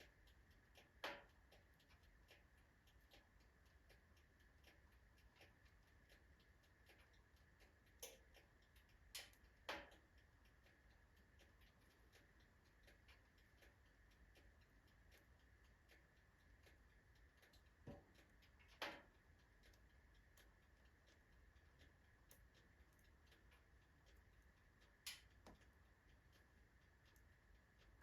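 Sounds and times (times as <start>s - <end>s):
wood fire crackling: 22.1s - 28.0s.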